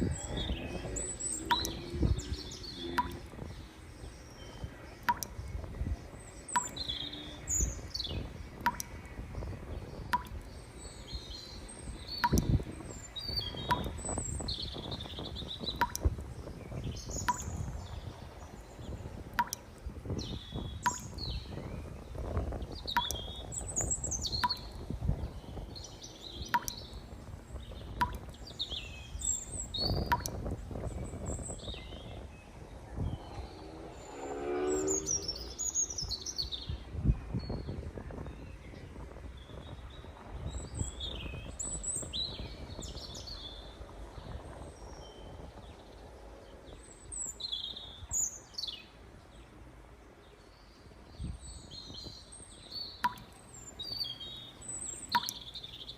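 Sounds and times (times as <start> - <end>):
small birds chirping: 0.0 - 55.9
sharp click: 1.5 - 1.8, 5.0 - 5.3, 6.6 - 6.8, 8.6 - 8.9.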